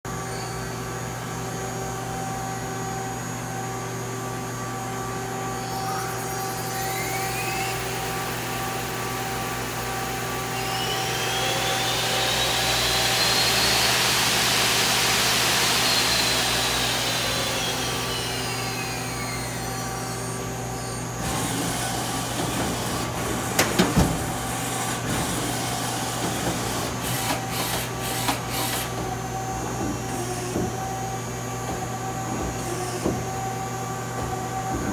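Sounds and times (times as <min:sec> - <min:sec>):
spindle whine: 0:05.4 - 0:26.3
sharp clicks and knocks: 0:22.3 - 0:25.3.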